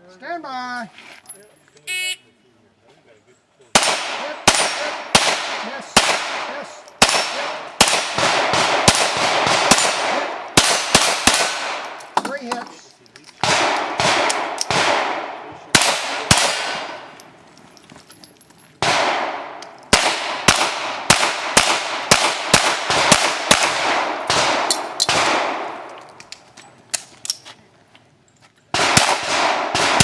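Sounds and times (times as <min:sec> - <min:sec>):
pistol shots: 0:03.7 - 0:12.2, 0:13.4 - 0:17.2, 0:18.8 - 0:26.2, 0:28.7 - 0:30.0.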